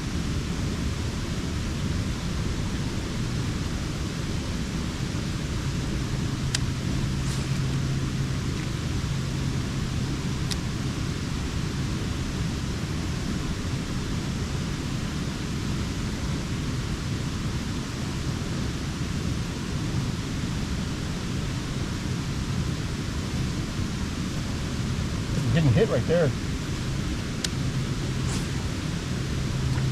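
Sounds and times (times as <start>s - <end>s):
creek water rushing: 23.3s - 29.9s.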